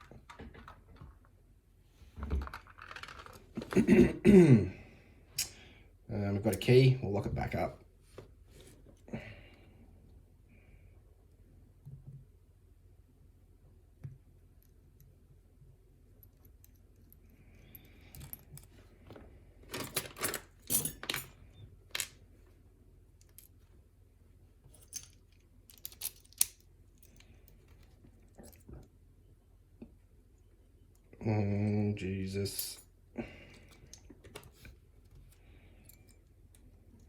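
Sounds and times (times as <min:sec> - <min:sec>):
lock and key clicking: 0:24.8 - 0:26.6.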